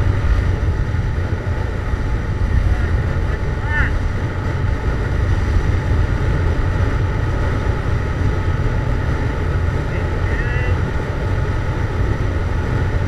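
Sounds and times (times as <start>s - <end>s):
motorcycle engine low rumble: 0.0s - 13.0s.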